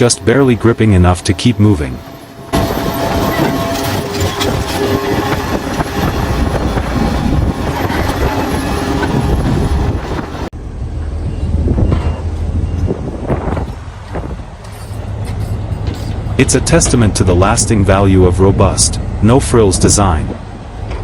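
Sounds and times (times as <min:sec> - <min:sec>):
heavy machinery noise: 0:00.0 - 0:21.0
tractor engine working hard: 0:02.5 - 0:10.6.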